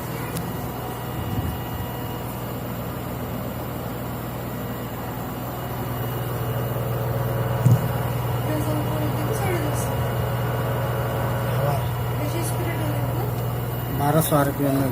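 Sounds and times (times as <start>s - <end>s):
washing machine drum spinning: 0.0s - 14.9s
brief thump: 7.6s - 7.9s.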